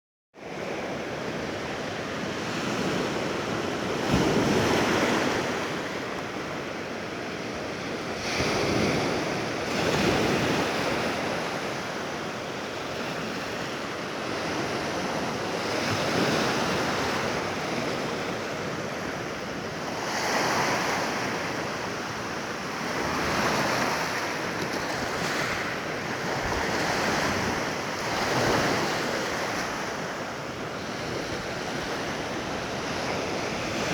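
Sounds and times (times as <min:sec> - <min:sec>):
sea waves breaking on beach: 0:00.4 - 0:33.9.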